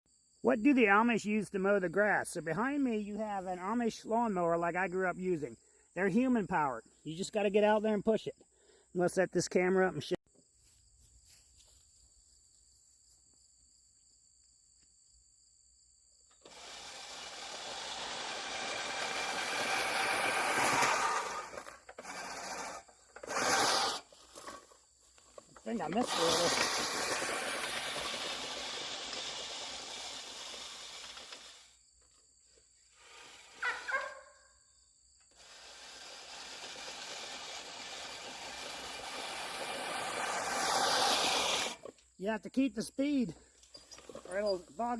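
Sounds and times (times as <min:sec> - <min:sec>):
faint insect drone: 0:00.1 - 0:09.0, 0:10.3 - 0:23.2, 0:24.0 - 0:44.9
push reel lawnmower whirring: 0:16.3 - 0:32.2, 0:32.9 - 0:34.2, 0:35.2 - 0:42.0.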